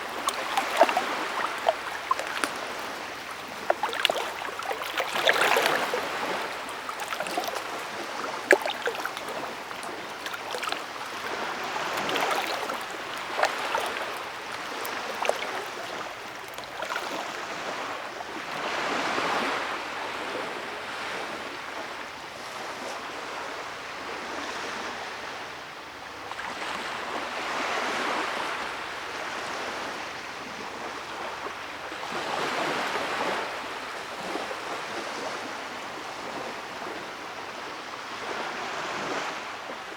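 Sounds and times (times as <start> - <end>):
small sharp splashes: 0.0 - 18.6
stream water over stones: 0.0 - 19.6.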